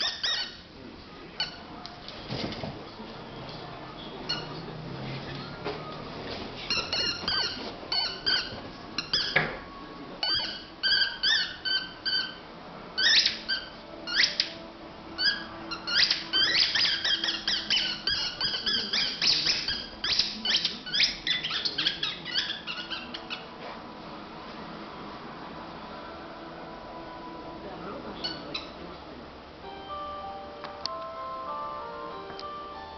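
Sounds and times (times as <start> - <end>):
animal squeaky whistling calls: 13.0 - 14.6, 15.2 - 23.5.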